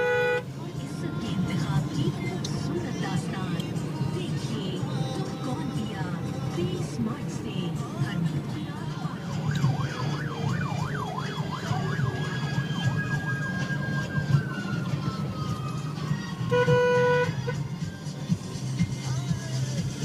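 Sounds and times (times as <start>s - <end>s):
vehicle horn: 0.0s - 0.5s, 16.5s - 17.6s
low hum of traffic: 0.0s - 20.0s
emergency vehicle siren: 8.9s - 17.2s.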